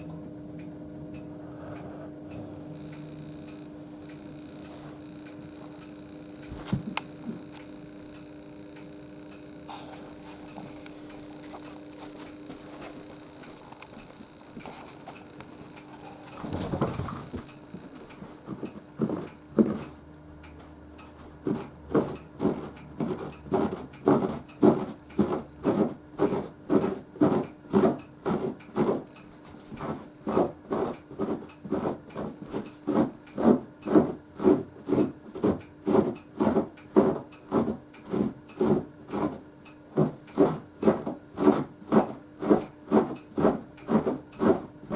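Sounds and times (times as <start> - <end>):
dog snoring: 1.4 - 3.3.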